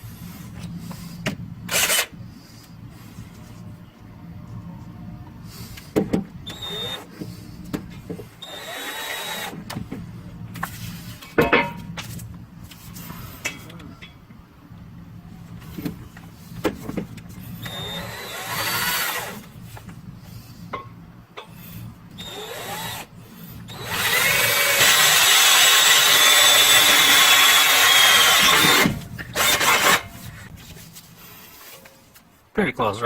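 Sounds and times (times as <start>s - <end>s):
power drill boring metal: 1.7s - 2.1s, 6.5s - 7.1s, 8.4s - 9.6s, 17.6s - 19.4s, 22.2s - 23.1s, 23.7s - 30.1s.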